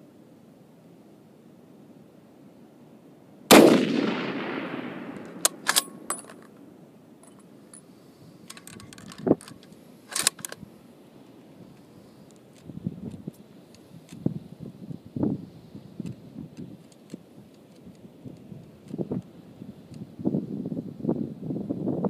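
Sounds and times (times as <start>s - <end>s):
rifle shot echoing: 3.5s - 6.6s
rifle bolt metallic clicks: 5.1s - 6.6s, 8.5s - 10.6s, 16.0s - 19.0s.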